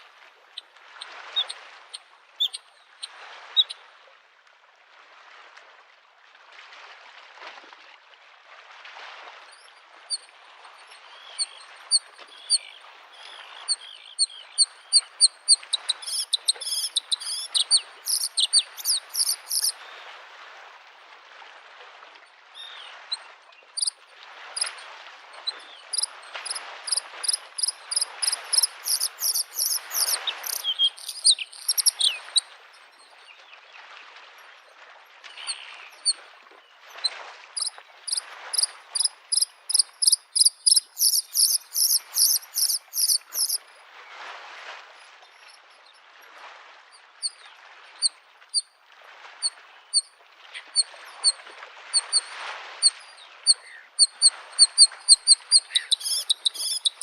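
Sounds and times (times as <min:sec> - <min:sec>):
lake waves lapping on shore: 0:00.0 - 0:57.0
bird singing: 0:11.1 - 0:19.8, 0:25.6 - 0:32.4, 0:37.6 - 0:43.6, 0:53.1 - 0:57.0.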